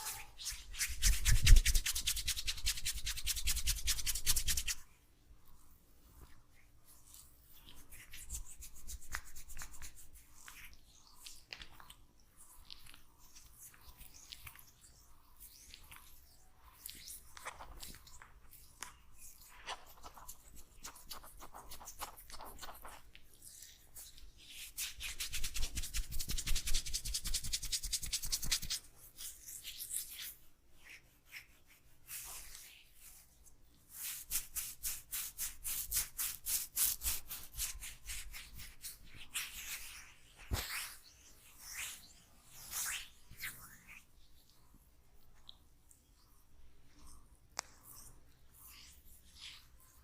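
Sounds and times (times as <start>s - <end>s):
hands rubbing oiled hair: 0.0s - 4.9s, 7.1s - 10.7s, 23.7s - 33.3s, 33.9s - 41.1s.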